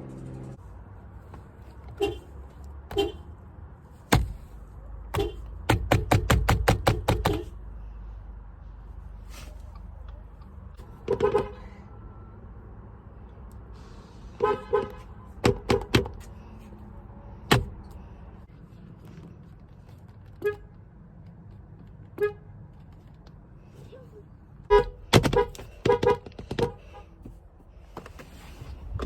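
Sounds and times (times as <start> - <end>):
car horn honking: 1.9 - 3.4, 5.1 - 5.5, 11.0 - 12.3, 14.4 - 16.0, 24.7 - 27.2.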